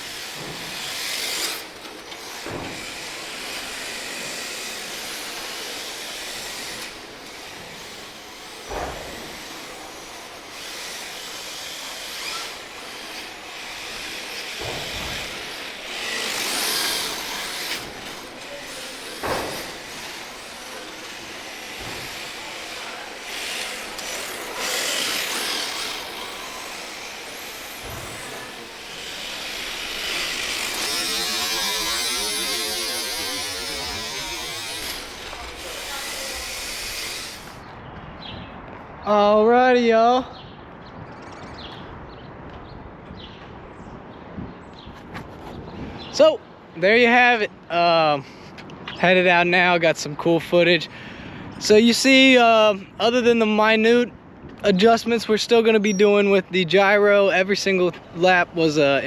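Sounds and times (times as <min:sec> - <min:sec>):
rc car motor and tyre hiss: 0:00.0 - 0:37.6.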